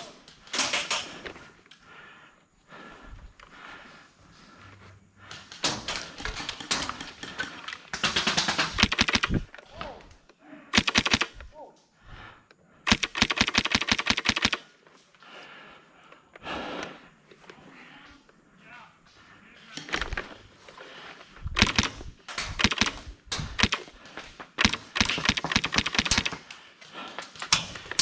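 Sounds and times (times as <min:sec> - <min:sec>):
airsoft guns firing full-auto bursts: 0:00.0 - 0:01.1, 0:05.4 - 0:09.5, 0:10.7 - 0:11.5, 0:12.9 - 0:14.7, 0:21.5 - 0:26.6, 0:27.4 - 0:28.0.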